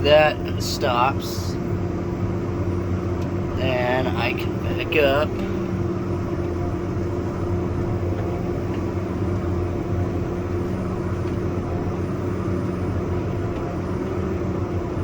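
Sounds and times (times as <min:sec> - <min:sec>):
tractor engine running: 0:00.0 - 0:15.0.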